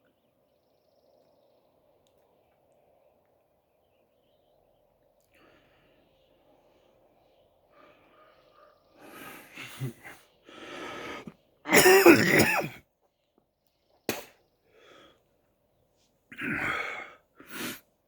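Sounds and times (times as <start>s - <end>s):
man wheezing and coughing: 11.7s - 12.8s, 16.3s - 17.8s.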